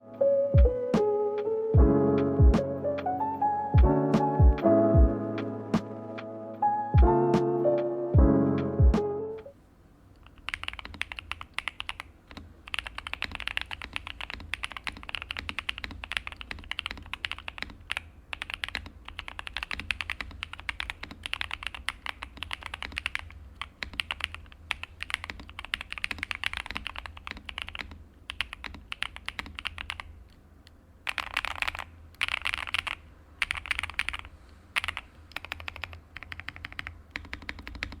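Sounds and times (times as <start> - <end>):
mechanical keyboard typing: 10.2 - 30.2, 31.0 - 38.0.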